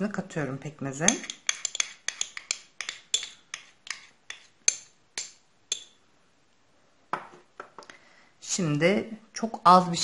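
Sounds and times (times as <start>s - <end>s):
spoon clinking against dish: 1.0s - 6.0s.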